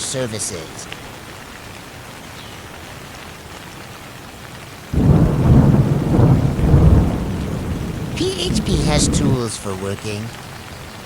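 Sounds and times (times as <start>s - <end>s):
steady rain: 0.0s - 11.0s
low rumble of thunder: 5.0s - 9.4s.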